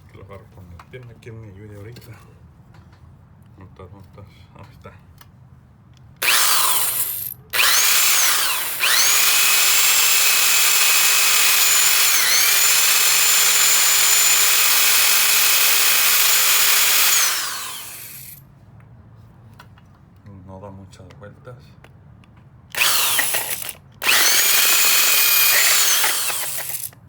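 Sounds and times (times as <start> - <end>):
electric drill motor whine: 6.2 - 18.4, 22.7 - 27.0.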